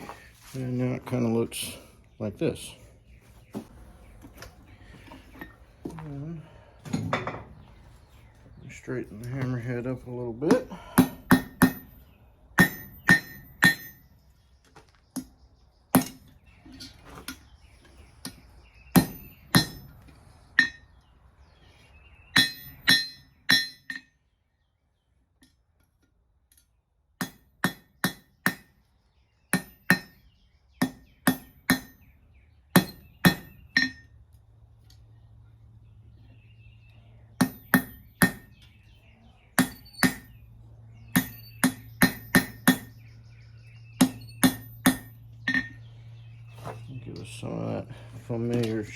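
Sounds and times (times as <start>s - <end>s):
hammer striking metal on anvil: 10.5s - 11.9s, 12.6s - 14.1s, 19.0s - 19.9s, 22.4s - 24.1s, 30.8s - 32.0s, 37.4s - 38.5s, 39.6s - 40.3s, 41.1s - 43.0s, 44.0s - 45.8s.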